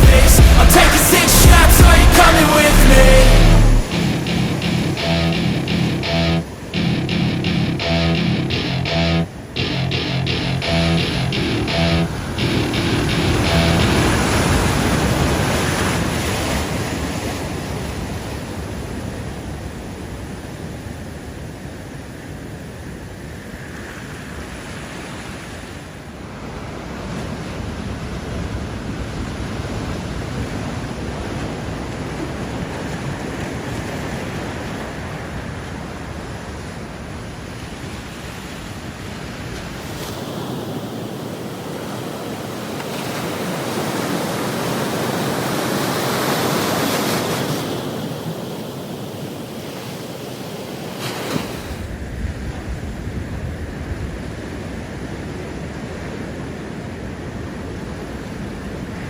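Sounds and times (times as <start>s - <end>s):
ocean surf breaking: 0.0s - 18.9s, 37.7s - 51.9s.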